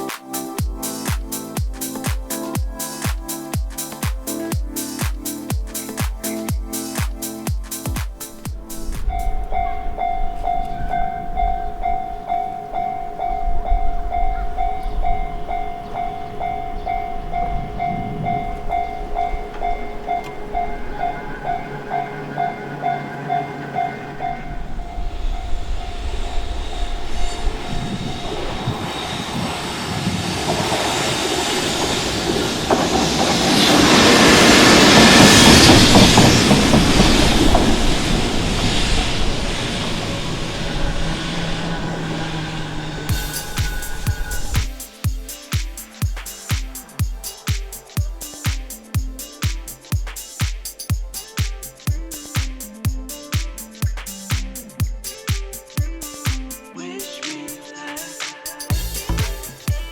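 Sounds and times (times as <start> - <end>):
train passing over crossing: 8.2 - 46.4
level crossing warning bell: 9.1 - 35.6, 36.3 - 45.1.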